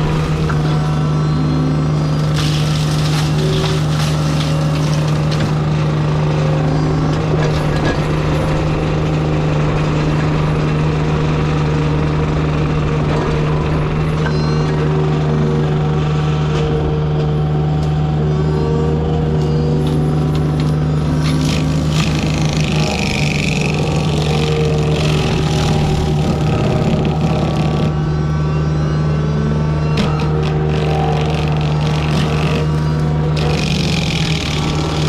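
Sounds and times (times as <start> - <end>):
mulching head chewing wood: 0.0 - 0.9, 2.2 - 5.7, 21.1 - 28.0, 30.0 - 35.0
diesel engine running at high revs: 0.0 - 35.0.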